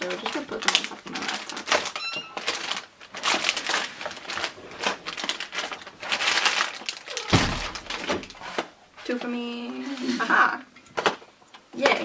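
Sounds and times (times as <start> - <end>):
packaging rustling and crinkling: 0.0 - 9.3.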